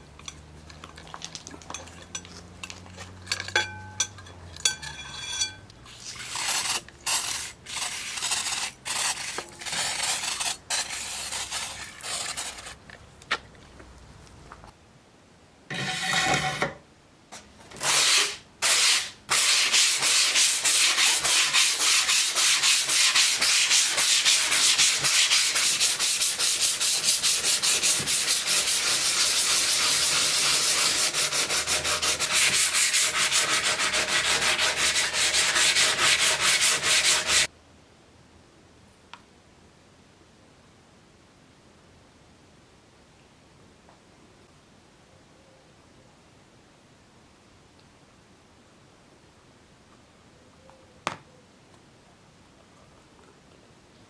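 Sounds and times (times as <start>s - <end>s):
hand sanding metal: 5.9s - 12.8s, 17.8s - 37.5s.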